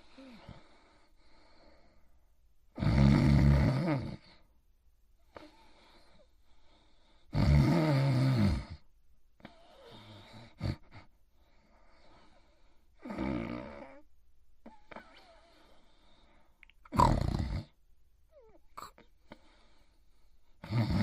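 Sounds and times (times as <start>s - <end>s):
quiet breaths out: 0.0s - 2.4s, 5.2s - 7.3s, 8.8s - 13.1s, 13.9s - 16.8s, 18.3s - 20.6s
cartoon character snoring: 2.8s - 4.4s, 7.3s - 8.8s, 13.0s - 14.1s, 16.9s - 17.8s, 20.6s - 21.0s.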